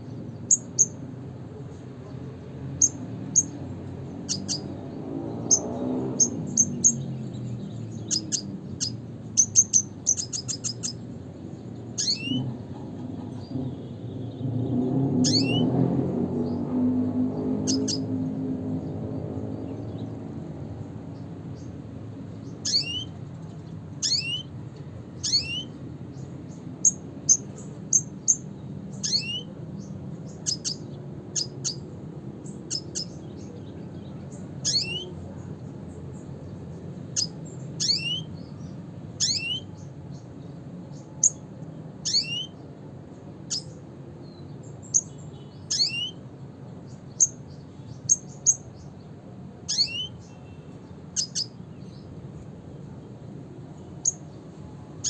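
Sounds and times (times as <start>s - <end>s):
bird calling sharp notes: 12.0s - 12.4s, 22.6s - 23.2s, 24.0s - 24.5s, 25.2s - 25.8s, 39.2s - 39.7s, 42.0s - 42.6s, 45.7s - 46.2s, 49.7s - 50.6s.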